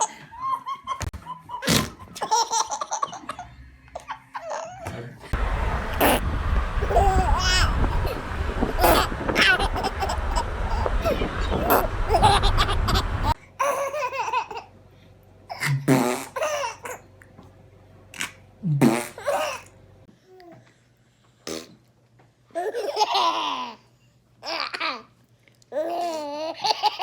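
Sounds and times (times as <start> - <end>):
baby farting: 1.6 - 2.0, 5.9 - 6.2, 15.5 - 16.6, 18.2 - 19.6, 21.4 - 21.8
baby babbling: 6.8 - 13.4.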